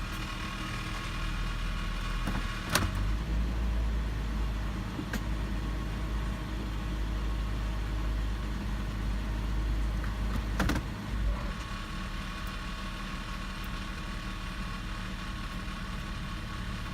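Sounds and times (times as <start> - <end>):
engine idling: 0.0 - 16.9.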